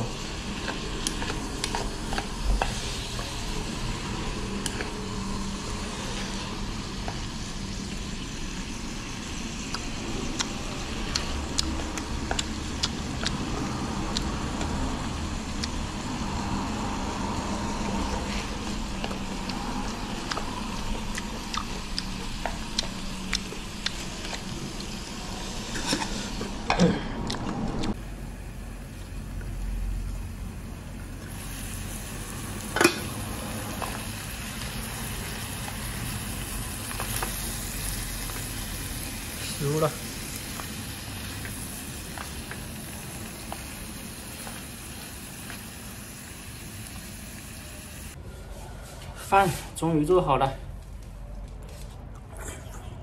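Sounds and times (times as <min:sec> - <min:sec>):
food sizzling in a wok: 0:00.0 - 0:26.6, 0:28.0 - 0:48.2
stirring clicks and scrapes: 0:00.5 - 0:03.4.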